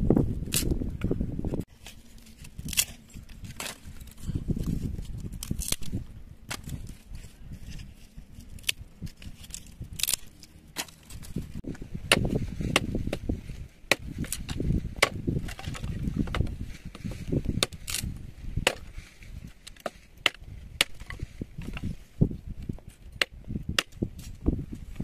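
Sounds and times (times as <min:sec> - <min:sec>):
chopping and knocking strikes: 0:12.1 - 0:13.3, 0:13.9 - 0:16.5, 0:18.6 - 0:18.9.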